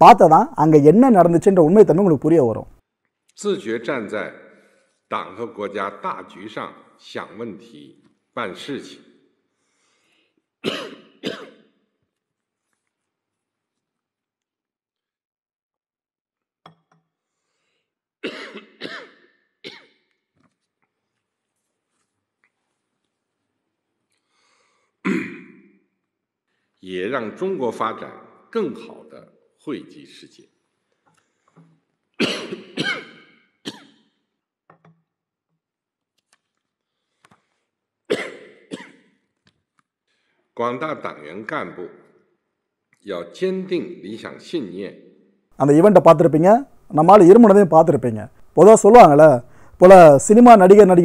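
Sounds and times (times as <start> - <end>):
man coughing: 10.6 - 11.7, 18.2 - 19.9, 25.0 - 25.6, 32.2 - 34.0, 38.1 - 39.1.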